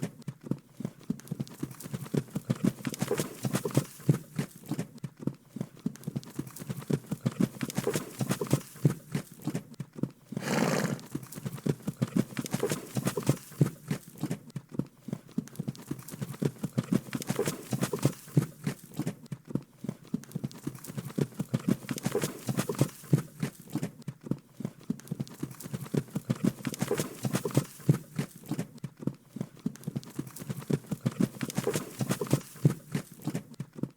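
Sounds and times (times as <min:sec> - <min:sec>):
horse hooves clip-clopping: 0:00.0 - 0:33.9
horse vocalisation: 0:10.3 - 0:11.3.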